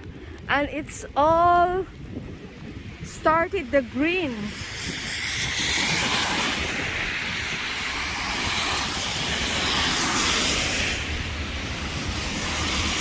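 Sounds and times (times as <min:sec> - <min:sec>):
low traffic rumble: 0:00.0 - 0:13.0
tyres hissing on wet street: 0:02.8 - 0:13.0.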